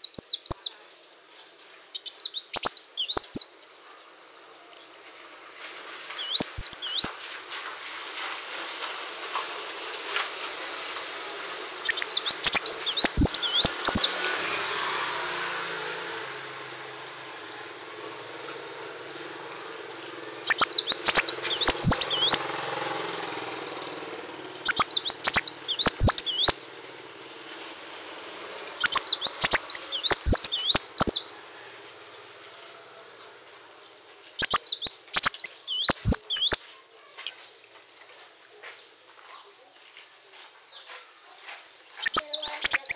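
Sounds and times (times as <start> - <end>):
sunbird twittering song: 0.0 - 3.6, 6.1 - 7.2, 11.8 - 14.2, 20.4 - 23.1, 23.9 - 26.7, 28.8 - 31.3, 33.8 - 37.6, 42.0 - 42.9.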